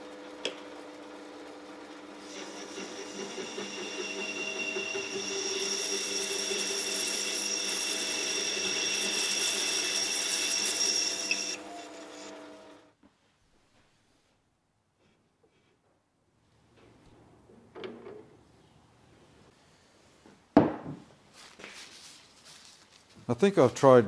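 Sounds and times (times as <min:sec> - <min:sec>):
power tool motor whine: 0:02.2 - 0:12.8.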